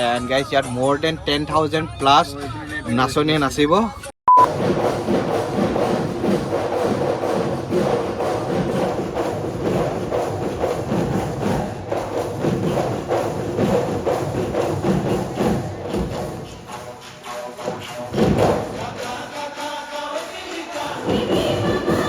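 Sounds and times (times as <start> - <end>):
folk music with drums: 4.4 - 22.0
hand percussion clapping: 4.4 - 22.0.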